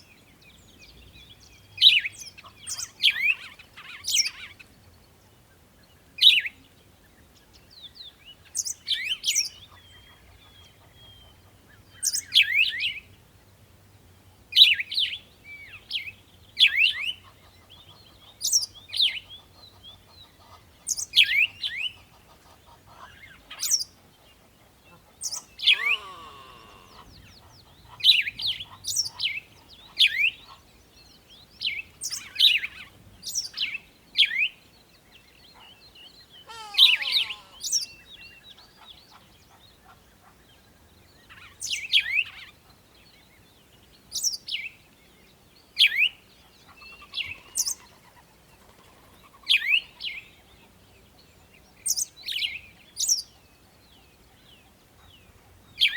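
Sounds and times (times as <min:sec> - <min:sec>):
bird chirping: 0:24.9 - 0:40.3.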